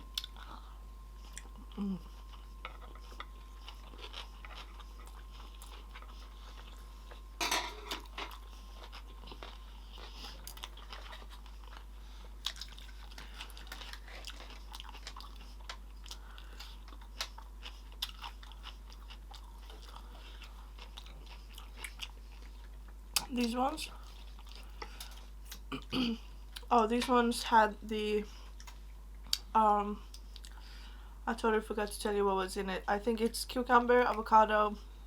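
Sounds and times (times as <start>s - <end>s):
wet chewing with crunches: 1.2s - 7.4s, 8.0s - 26.7s, 28.2s - 30.7s.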